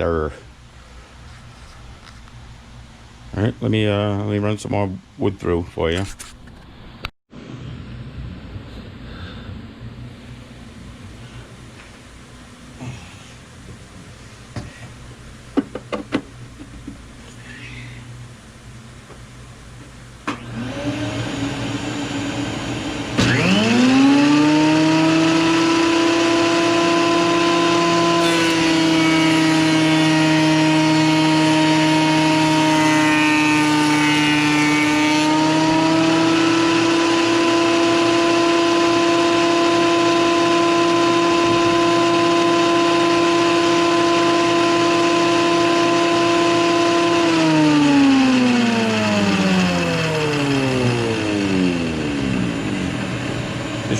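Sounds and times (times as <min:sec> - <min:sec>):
quieter motor hum: 0:06.5 - 0:53.9
thickness planer motor whining: 0:20.3 - 0:53.9
board being planed: 0:20.4 - 0:53.1.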